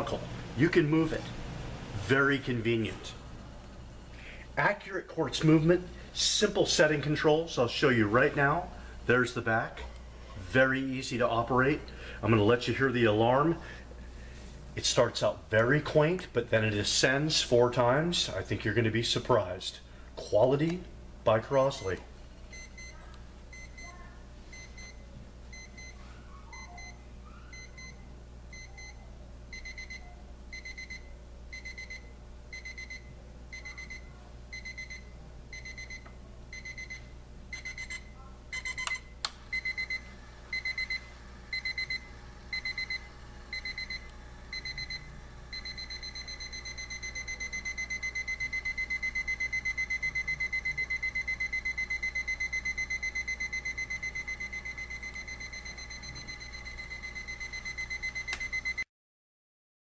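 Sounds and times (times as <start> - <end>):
alarm clock beeping: 26.6 - 58.8.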